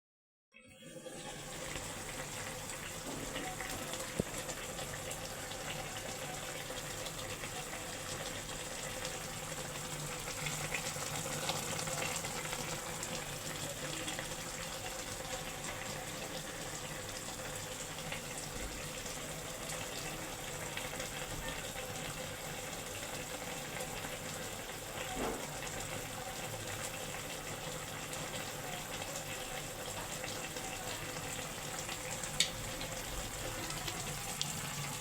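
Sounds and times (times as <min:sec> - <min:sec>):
water running from tap: 0:00.8 - 0:35.0.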